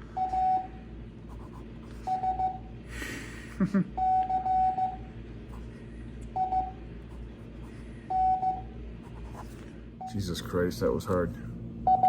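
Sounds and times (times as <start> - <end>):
morse code beeps: 2.0 - 2.7, 4.0 - 5.0, 6.4 - 6.8, 8.1 - 8.7.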